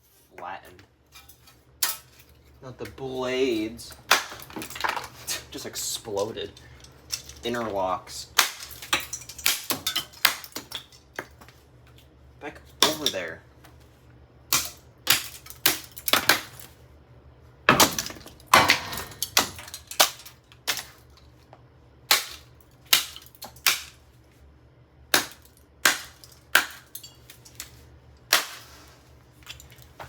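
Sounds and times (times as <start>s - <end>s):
sledgehammer smashing plastic and metal: 4.0s - 5.5s, 7.3s - 10.9s, 17.7s - 21.1s, 25.1s - 28.8s
pieces clattering: 4.1s - 11.6s, 17.7s - 21.4s, 25.3s - 30.0s.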